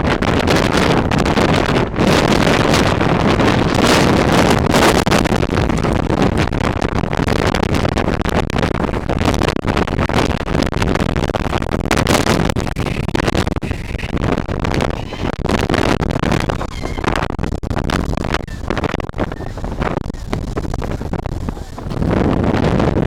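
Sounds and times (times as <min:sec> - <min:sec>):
jet engines roaring: 0:00.0 - 0:06.4
wind buffeting microphone: 0:00.0 - 0:23.0.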